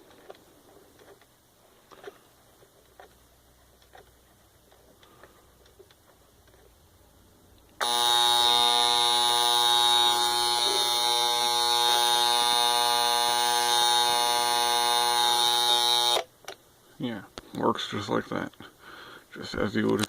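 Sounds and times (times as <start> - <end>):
alarm clock buzzing: 7.8 - 16.3.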